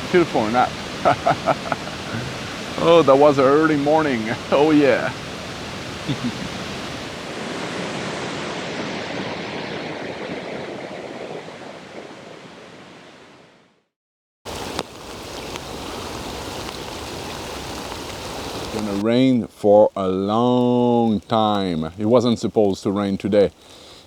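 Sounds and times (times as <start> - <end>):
waterfall rushing: 0.0 - 13.3, 14.5 - 19.0
rain hissing: 0.0 - 13.6, 14.5 - 24.0.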